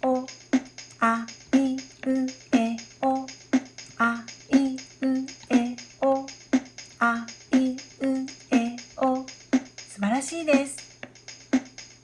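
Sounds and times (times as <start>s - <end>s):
woman chanting syllables: 0.0s - 0.3s, 1.0s - 3.3s, 3.9s - 6.3s, 7.0s - 9.3s, 9.9s - 10.9s
backing beat with tambourine ticks: 0.0s - 12.0s.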